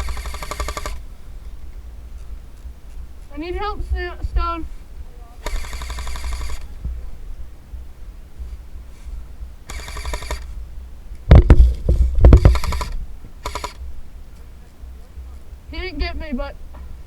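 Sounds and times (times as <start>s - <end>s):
automatic airsoft gun bursts: 0.0s - 1.1s, 5.4s - 6.8s, 9.6s - 10.6s, 11.3s - 13.9s
low thumps on microphone: 6.7s - 8.7s, 11.2s - 14.0s.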